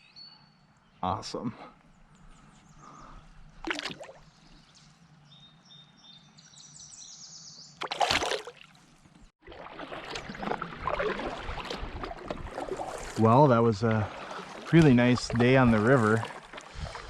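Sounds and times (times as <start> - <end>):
water splashing against kayak: 7.8 - 17.0.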